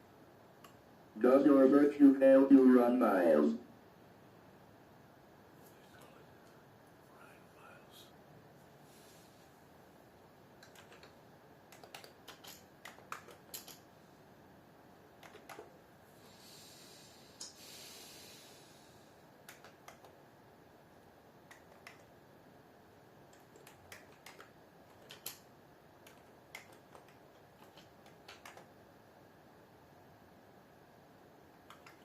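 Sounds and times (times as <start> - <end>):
soft rushing hiss: 0.0 - 11.6, 15.7 - 19.4
typing on a computer keyboard: 10.6 - 13.8, 15.2 - 15.7, 19.4 - 20.2, 21.5 - 22.1, 23.3 - 25.4, 26.0 - 28.7, 31.6 - 32.0.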